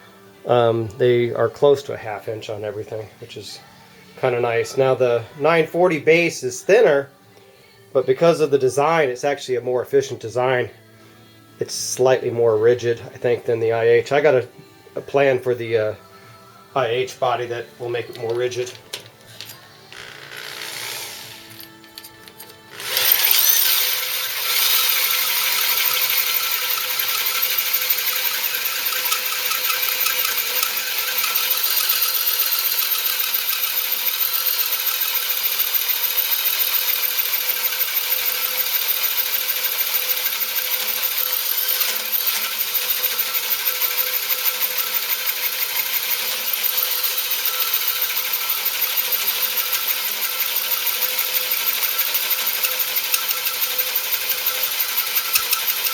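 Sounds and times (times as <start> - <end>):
hole saw cutting metal: 19.5 - 55.9.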